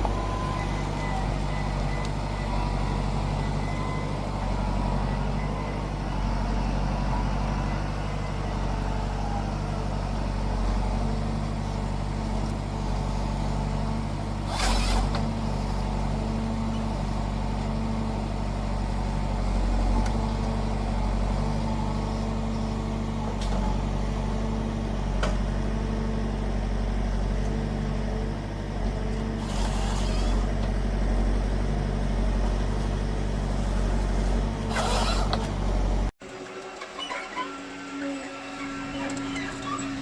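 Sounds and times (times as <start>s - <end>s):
diesel engine running: 0.0s - 36.8s.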